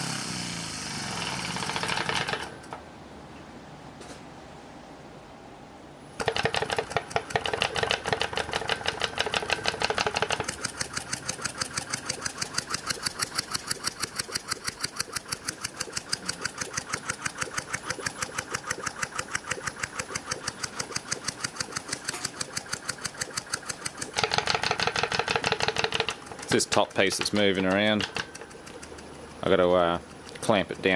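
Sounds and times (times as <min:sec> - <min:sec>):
compressor clattering: 0:01.1 - 0:02.8, 0:06.2 - 0:30.9.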